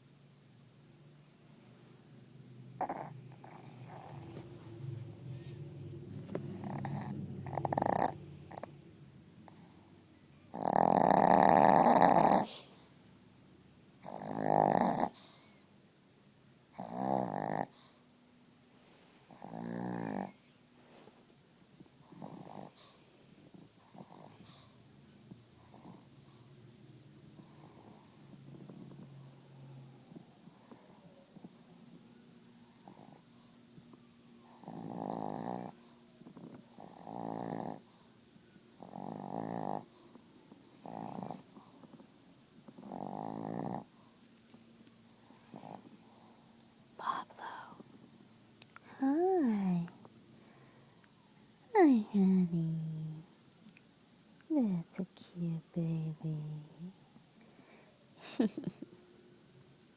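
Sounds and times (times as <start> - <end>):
dog snoring: 2.8 - 8.8, 10.5 - 12.8, 14.0 - 15.6, 16.7 - 18.0, 19.3 - 20.4, 22.0 - 24.8, 25.6 - 26.5, 27.3 - 31.7, 32.6 - 33.5, 34.4 - 38.1, 38.8 - 44.1, 45.2 - 46.4.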